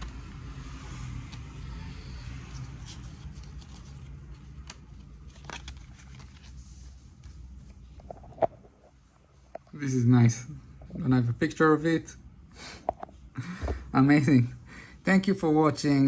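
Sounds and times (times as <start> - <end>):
trading cards clicking and scraping: 0.0 - 8.8.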